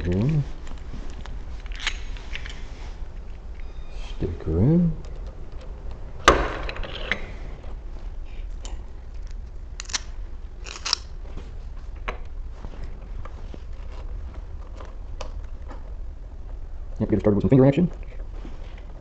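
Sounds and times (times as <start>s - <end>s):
scraping rustles: 0.0s - 5.9s, 10.2s - 16.6s
metal parts clicking and rattling: 8.6s - 11.1s.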